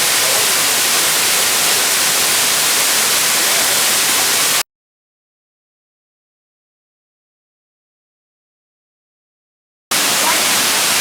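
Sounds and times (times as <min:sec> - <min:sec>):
waterfall rushing: 0:00.0 - 0:04.6, 0:09.9 - 0:11.0.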